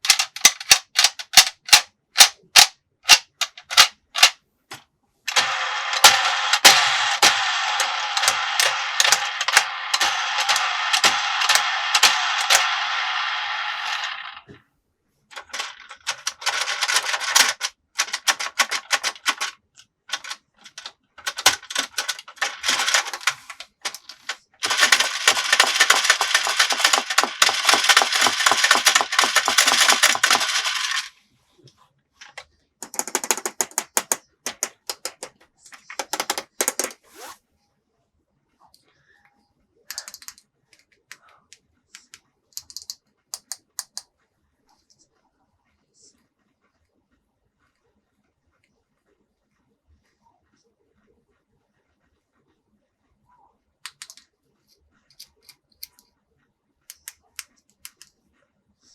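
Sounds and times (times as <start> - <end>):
plastic toy pieces clattering: 0.0 - 4.4, 5.3 - 14.5, 15.3 - 31.1, 32.2 - 37.0.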